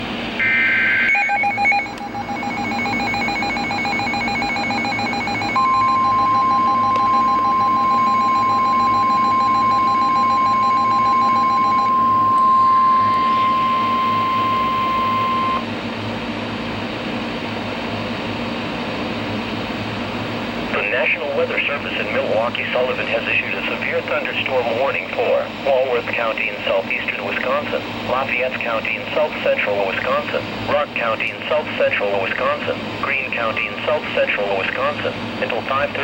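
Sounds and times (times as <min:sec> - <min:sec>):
rapid pulsing beep: 0:00.4 - 0:15.6
steady alarm tone: 0:00.4 - 0:15.7
radio hiss: 0:20.7 - 0:36.0.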